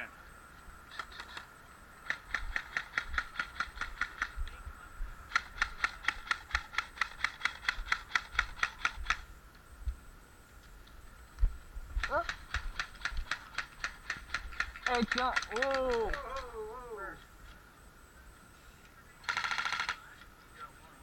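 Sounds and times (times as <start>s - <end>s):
airsoft gun firing rapid shots: 2.0s - 4.4s, 5.3s - 9.2s, 12.0s - 16.4s, 19.2s - 20.0s.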